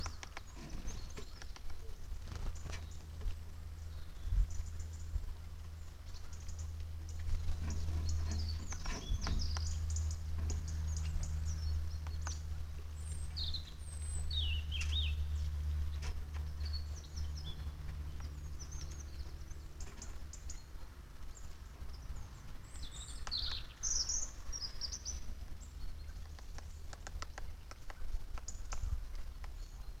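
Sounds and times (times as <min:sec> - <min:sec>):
sharp clicks: 0:00.0 - 0:03.1, 0:26.2 - 0:29.6
steady low hum: 0:00.0 - 0:30.0
wild birds chirping: 0:00.0 - 0:30.0.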